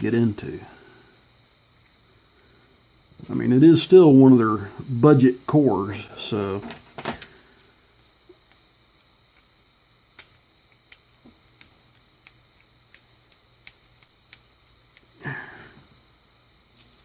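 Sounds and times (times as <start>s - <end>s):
person sniffing: 15.2s - 15.9s.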